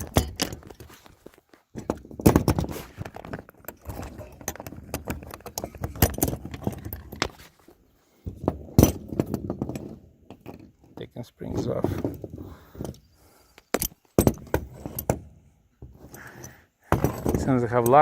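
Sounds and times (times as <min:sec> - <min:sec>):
metal springs clinking and rattling: 0:00.0 - 0:01.2, 0:01.8 - 0:07.4, 0:16.1 - 0:18.0.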